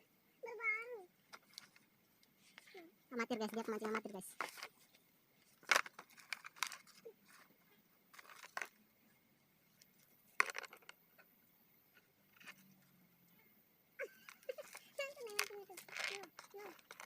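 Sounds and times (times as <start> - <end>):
rustling and crunching: 1.2 - 11.3, 14.0 - 17.0.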